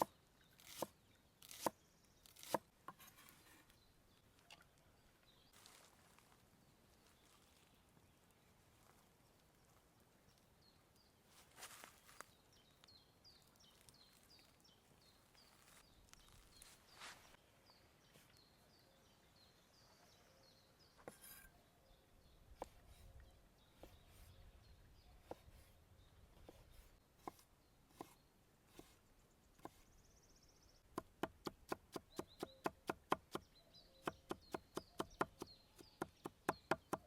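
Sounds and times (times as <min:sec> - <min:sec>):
small bird chirping: 0:11.7 - 0:37.0.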